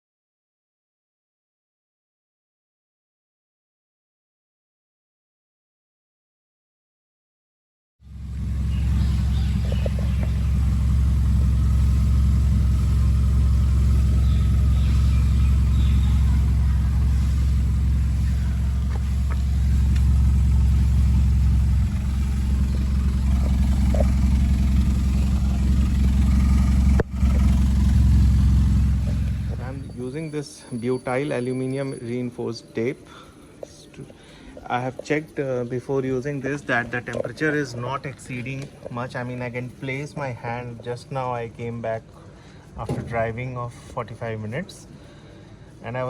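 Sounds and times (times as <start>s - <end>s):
car engine idling: 8.0s - 30.6s, 38.3s - 46.0s.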